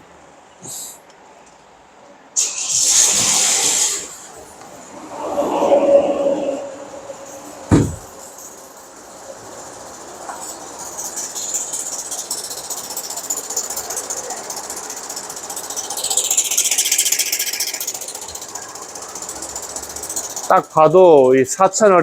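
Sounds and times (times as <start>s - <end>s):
heavy thump: 7.7s - 8.1s.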